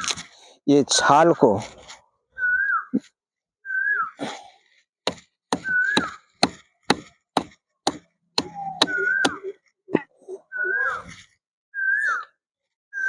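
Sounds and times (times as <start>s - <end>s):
falling whistle-like call: 2.4s - 3.0s, 3.7s - 4.2s, 5.6s - 6.3s, 8.4s - 9.6s, 10.4s - 12.4s
chopping into tree bark: 5.1s - 9.4s.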